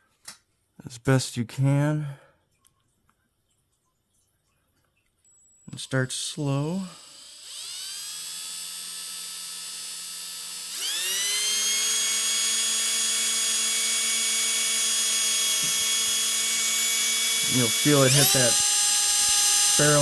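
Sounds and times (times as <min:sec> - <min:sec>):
electric drill whining into wood: 0:05.3 - 0:20.0.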